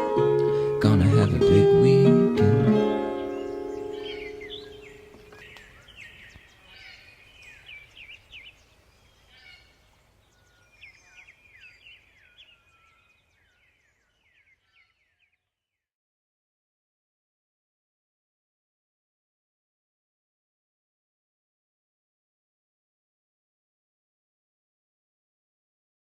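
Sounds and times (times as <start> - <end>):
acoustic guitar chord strummed: 0.0 - 5.2
small birds chirping: 2.7 - 15.8.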